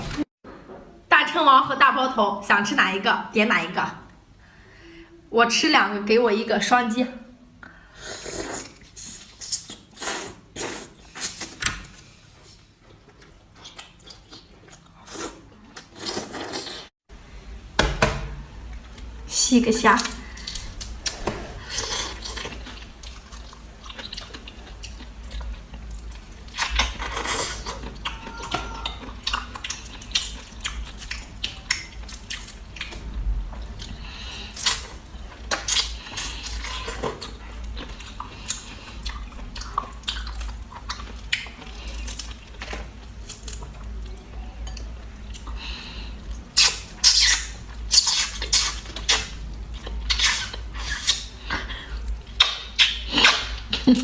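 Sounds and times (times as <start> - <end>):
wet chewing and smacking: 12.9 - 16.5, 21.8 - 45.6, 46.3 - 51.4.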